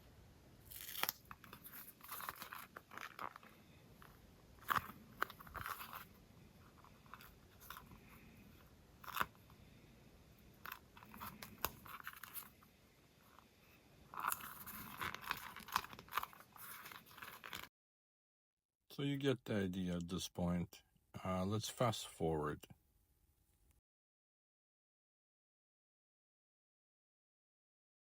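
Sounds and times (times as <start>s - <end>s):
rubber and patch crinkling: 0.6s - 9.6s, 10.4s - 17.7s
crackly rustling: 0.6s - 17.7s.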